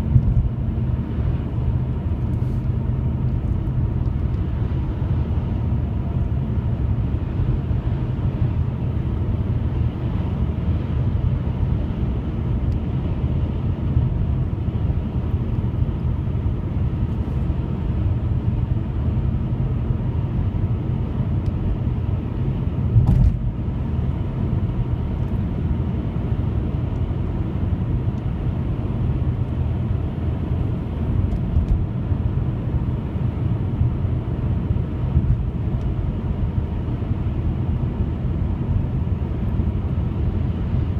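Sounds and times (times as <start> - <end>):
brief thump: 23.0 - 23.4.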